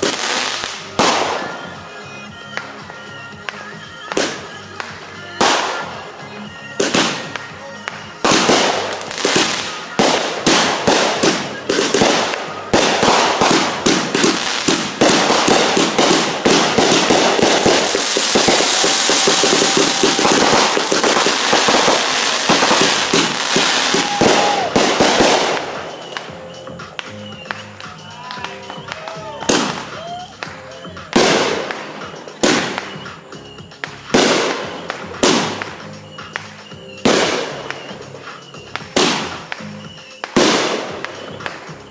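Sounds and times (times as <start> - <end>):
fireworks banging and crackling: 0.0 - 41.9.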